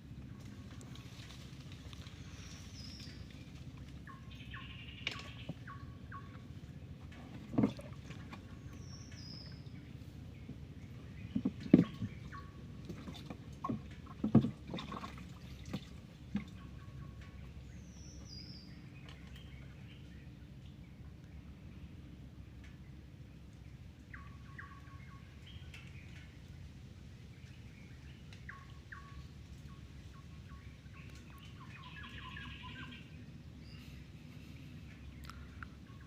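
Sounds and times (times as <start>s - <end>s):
birds calling: 0.0s - 36.0s
water splashes and knocks: 7.0s - 9.6s, 10.4s - 17.5s.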